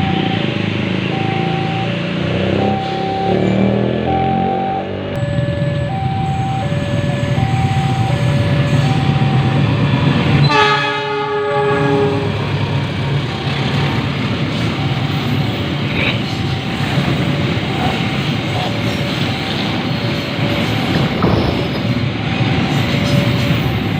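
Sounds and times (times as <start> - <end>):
two-tone level-crossing alarm: 0.0 - 12.3, 13.0 - 23.9
diesel train rumbling: 0.0 - 23.9
train horn blowing: 10.4 - 12.4.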